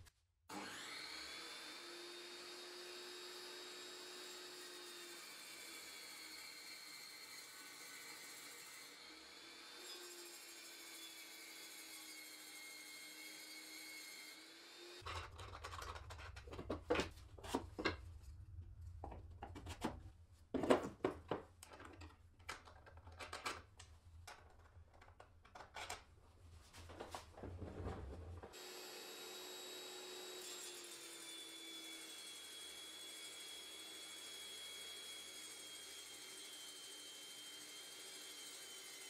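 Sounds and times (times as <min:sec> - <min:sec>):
hand tools knocking and scraping wood: 0:15.0 - 0:18.1, 0:19.0 - 0:23.5.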